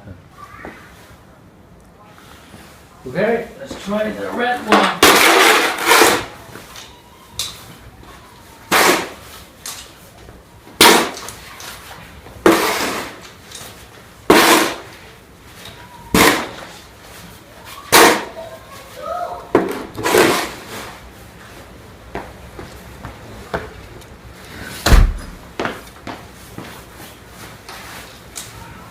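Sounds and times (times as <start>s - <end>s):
snow shovel scraping snow: 5.1s - 6.3s, 12.5s - 13.2s, 14.3s - 14.9s, 20.0s - 20.9s.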